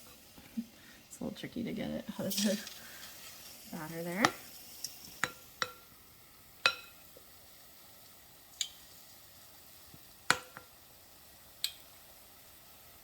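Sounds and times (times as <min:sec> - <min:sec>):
faint steady hiss: 0:00.0 - 0:13.0
utensil clinking against cookware: 0:06.6 - 0:07.0.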